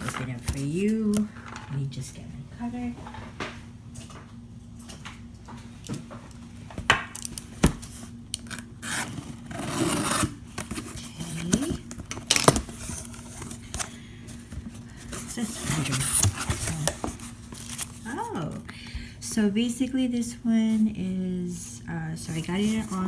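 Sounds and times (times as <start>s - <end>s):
cutter slicing tape and cardboard: 8.4s - 10.3s
cardboard tearing: 8.4s - 13.9s.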